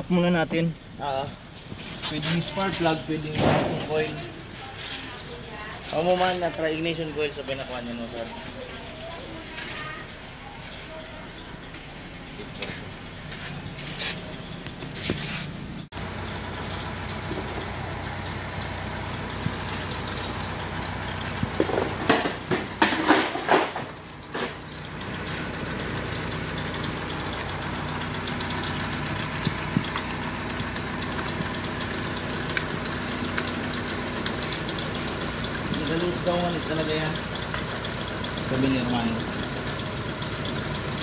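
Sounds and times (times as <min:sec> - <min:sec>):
car engine idling and misfiring: 0:00.0 - 0:41.0.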